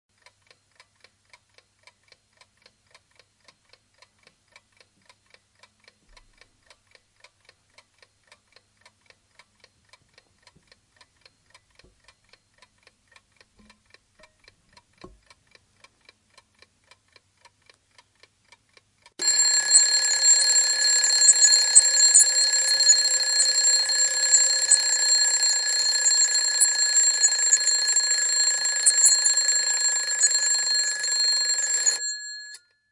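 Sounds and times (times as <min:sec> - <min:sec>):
clock ticking: 0:00.2 - 0:32.6
alarm bell ringing: 0:19.2 - 0:32.8.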